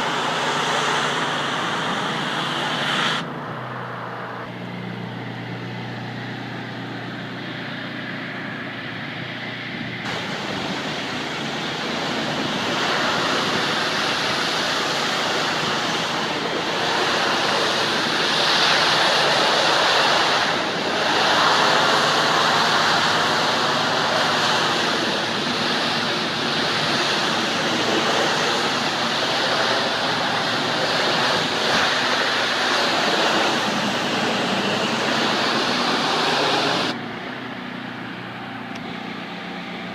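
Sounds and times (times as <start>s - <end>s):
pressure washer spraying water: 0.0s - 3.3s, 10.0s - 37.0s.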